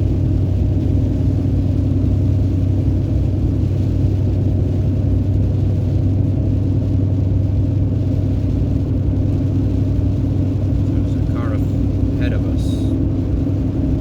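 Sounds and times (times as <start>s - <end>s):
truck engine and tyre rumble: 0.0s - 14.0s.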